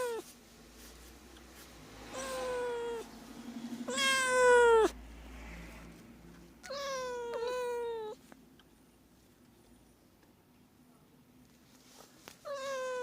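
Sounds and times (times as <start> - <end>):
cat meowing: 0.0 - 0.3, 2.1 - 3.1, 3.8 - 5.0, 6.6 - 8.2, 12.4 - 13.0.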